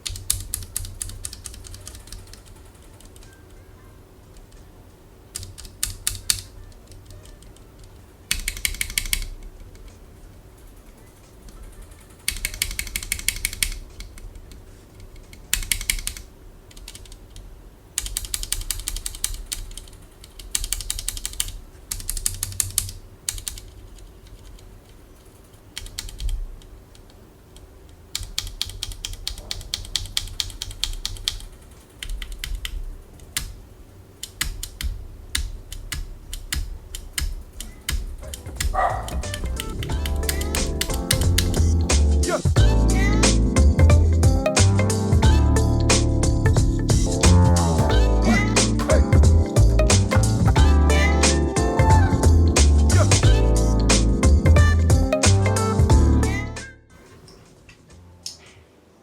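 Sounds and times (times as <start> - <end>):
mechanical keyboard key clacks: 0.0 - 3.6, 5.3 - 10.0, 11.1 - 17.4, 18.0 - 25.0, 25.7 - 26.4, 28.2 - 33.6, 34.2 - 41.7.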